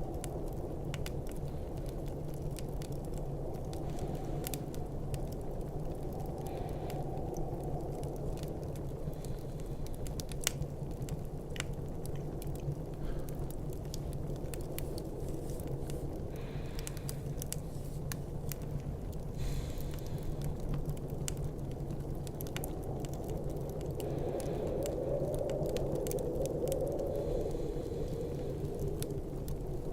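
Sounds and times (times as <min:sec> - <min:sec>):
storm wind rumbling: 0:00.0 - 0:29.9
wood fire crackling and popping: 0:00.0 - 0:29.9.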